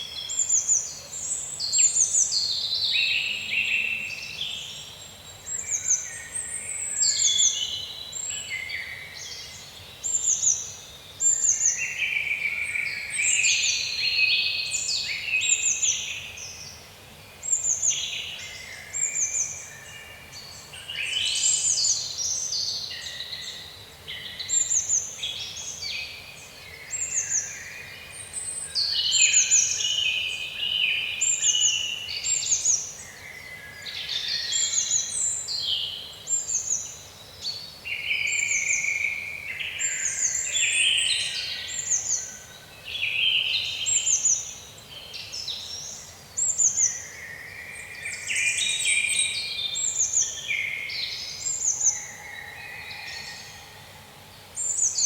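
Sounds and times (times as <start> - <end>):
birds singing and chirping: 17.4 - 55.0.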